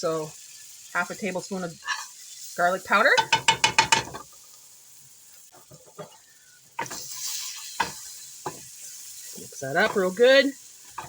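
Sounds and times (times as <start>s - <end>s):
butter sizzling in a pot: 0.0s - 11.0s
spoon knocking against pot: 3.2s - 4.2s.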